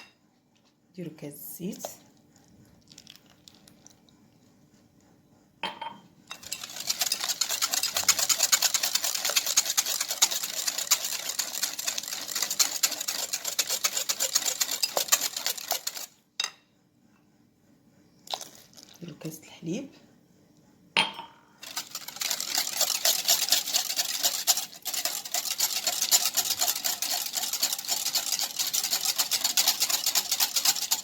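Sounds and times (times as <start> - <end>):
whisk beating batter in a bowl: 6.3 - 16.2, 21.6 - 31.0.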